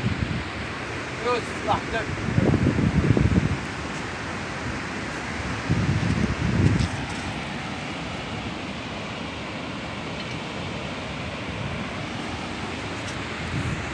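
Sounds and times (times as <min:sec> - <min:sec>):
wind buffeting microphone: 0:00.0 - 0:08.6, 0:11.5 - 0:13.9
sea surf: 0:00.0 - 0:13.9
wind: 0:00.0 - 0:13.9.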